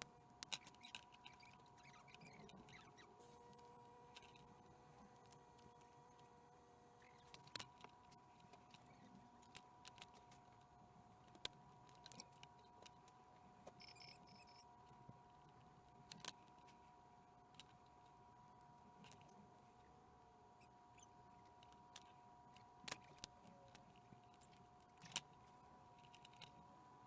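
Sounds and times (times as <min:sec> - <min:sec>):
faint high tones: 0:13.8 - 0:14.6.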